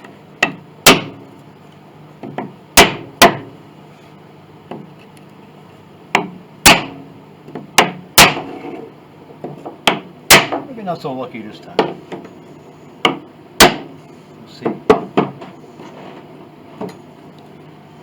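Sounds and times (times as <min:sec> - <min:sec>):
hammer striking wood: 0:00.4 - 0:01.2, 0:02.2 - 0:03.5, 0:06.1 - 0:08.6, 0:09.4 - 0:10.7, 0:13.0 - 0:14.0, 0:14.6 - 0:15.4.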